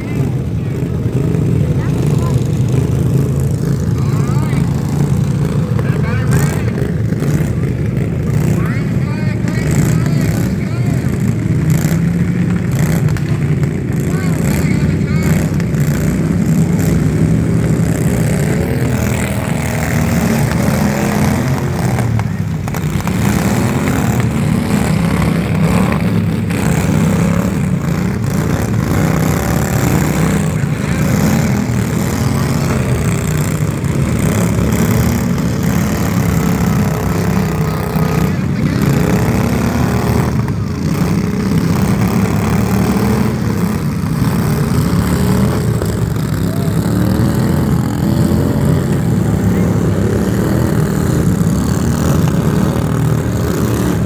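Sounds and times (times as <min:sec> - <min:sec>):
loud engine droning: 0:00.0 - 0:54.0.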